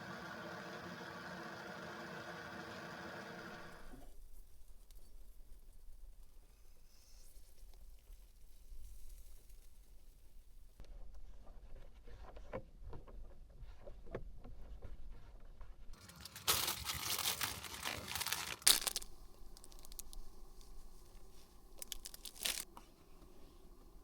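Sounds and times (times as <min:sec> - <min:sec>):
plastic packaging crinkling and tearing: 0:16.0 - 0:22.7.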